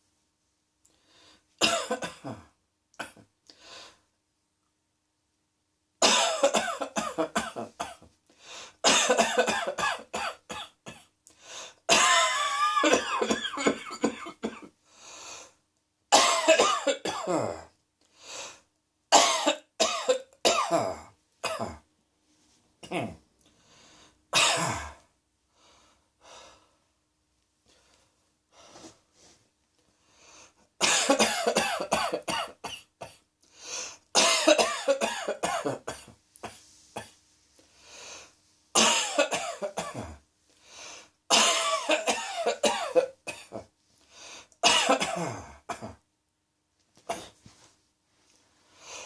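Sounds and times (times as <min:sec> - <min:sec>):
faint breaths: 0:00.8 - 0:01.6, 0:03.4 - 0:04.1, 0:08.3 - 0:08.8, 0:11.3 - 0:11.9, 0:14.8 - 0:15.6, 0:18.0 - 0:18.7, 0:23.4 - 0:24.3, 0:24.9 - 0:27.0, 0:27.6 - 0:30.7, 0:33.4 - 0:34.1, 0:36.5 - 0:38.5, 0:40.5 - 0:41.2, 0:43.9 - 0:44.6, 0:47.2 - 0:49.0
person coughing: 0:01.6 - 0:03.2, 0:06.0 - 0:08.0, 0:08.8 - 0:11.1, 0:11.9 - 0:14.7, 0:16.1 - 0:17.7, 0:19.1 - 0:21.8, 0:22.8 - 0:23.2, 0:24.4 - 0:25.0, 0:30.8 - 0:33.2, 0:34.2 - 0:37.1, 0:38.8 - 0:40.2, 0:41.3 - 0:43.7, 0:44.6 - 0:46.0, 0:47.1 - 0:47.4.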